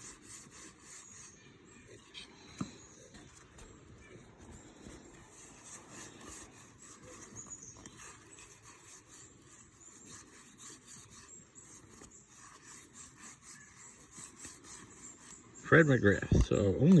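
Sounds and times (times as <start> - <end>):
cards rubbing and sliding: 4.5 - 15.6.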